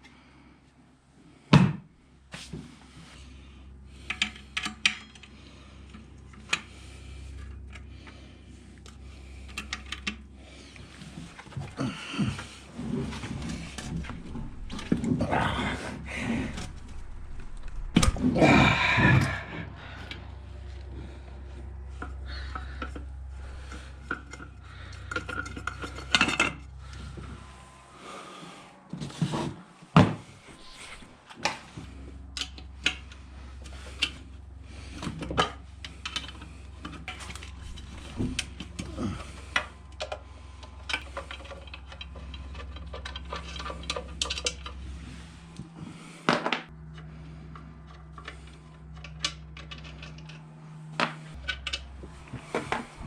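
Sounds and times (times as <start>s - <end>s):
steady low hum: 0.2s - 53.0s
tools and parts clinking: 21.9s - 26.8s, 34.9s - 44.9s, 46.3s - 53.0s.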